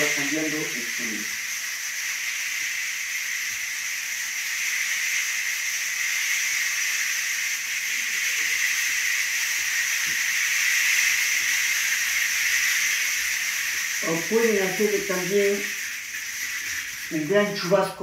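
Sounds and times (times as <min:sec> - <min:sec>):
rain stick being shaken: 0:00.0 - 0:18.0.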